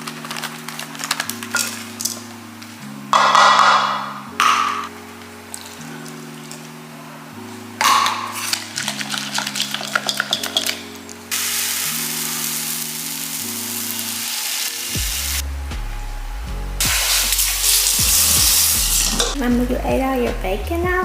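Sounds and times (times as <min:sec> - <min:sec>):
background music with slow chords: 0:00.0 - 0:21.0
food sizzling in a frying pan: 0:08.0 - 0:15.4, 0:16.8 - 0:19.4.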